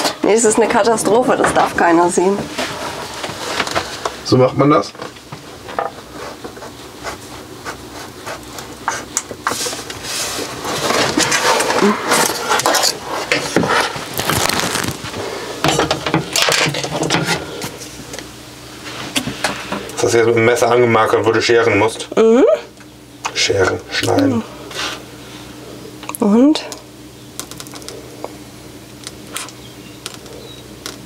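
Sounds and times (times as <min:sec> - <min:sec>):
knife scratching rubber mat: 0:06.1 - 0:14.8.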